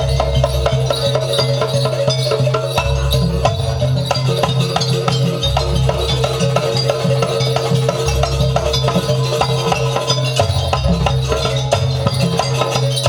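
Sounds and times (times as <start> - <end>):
fast drum strokes: 0.0 - 13.0.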